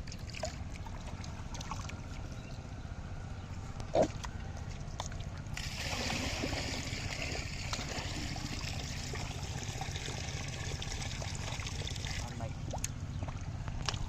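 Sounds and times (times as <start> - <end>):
low steady rumble: 0.0 - 14.0
water running and trickling: 5.5 - 12.8.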